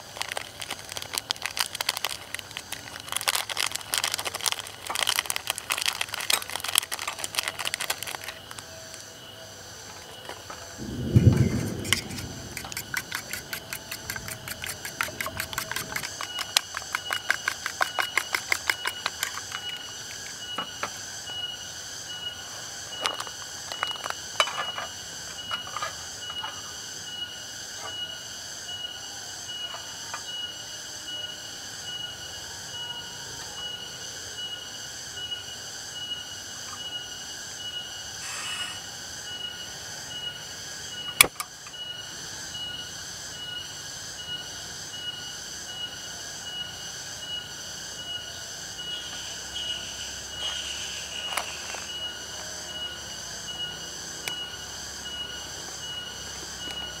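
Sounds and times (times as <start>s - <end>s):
insects chirping: 0.0s - 57.0s.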